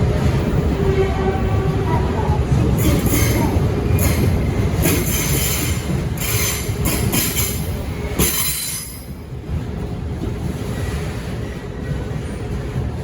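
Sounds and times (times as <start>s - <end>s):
freight train wagons rumbling: 0.0s - 13.0s
train wheel squeal: 2.8s - 9.2s.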